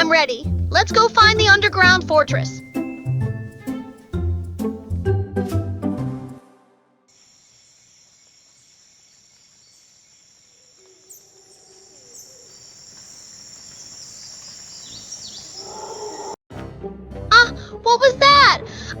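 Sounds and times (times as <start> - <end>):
crickets chirping: 7.1 - 16.4.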